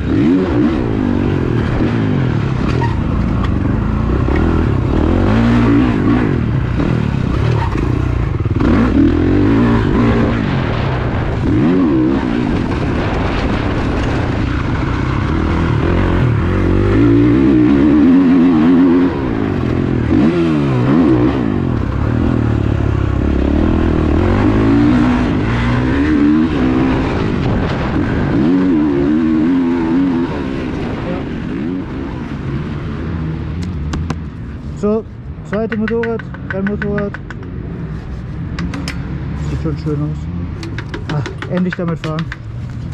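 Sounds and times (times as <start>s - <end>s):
motocross bike engine revving: 0.0s - 34.2s.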